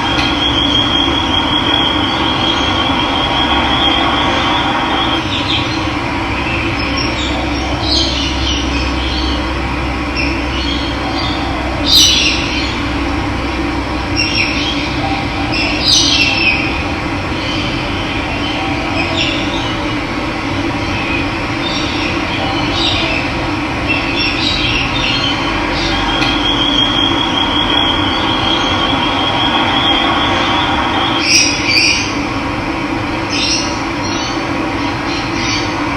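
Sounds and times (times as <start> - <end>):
birds chirping: 0.0 - 13.0, 14.1 - 20.0, 20.6 - 32.2
high trill: 25.4 - 32.2.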